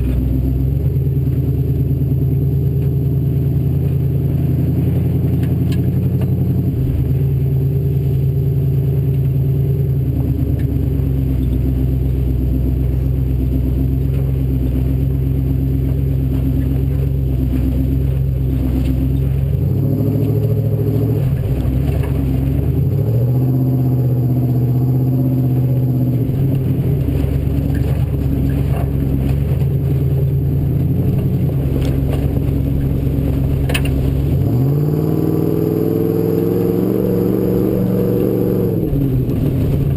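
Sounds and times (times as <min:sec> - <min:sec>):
truck engine running hard: 0:00.0 - 0:39.9
truck banging over rough ground: 0:13.1 - 0:23.5, 0:25.4 - 0:35.8, 0:38.3 - 0:39.9.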